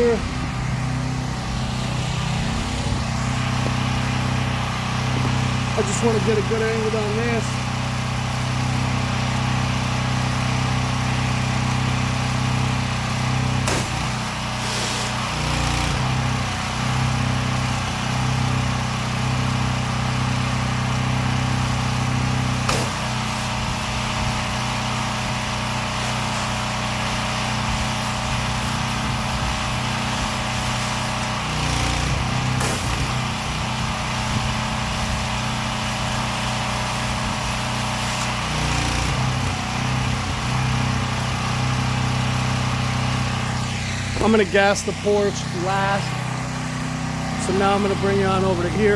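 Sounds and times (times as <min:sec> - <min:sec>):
pressure washer engine running: 0:00.0 - 0:48.9
hiss: 0:14.6 - 0:15.2.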